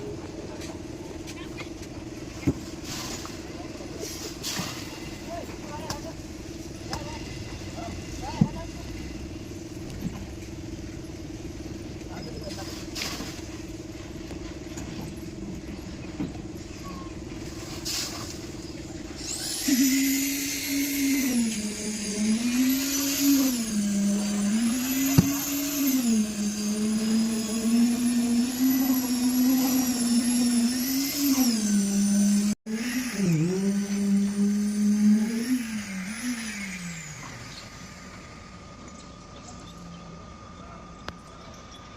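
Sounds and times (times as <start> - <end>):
crane engine revving: 13.2 - 41.0.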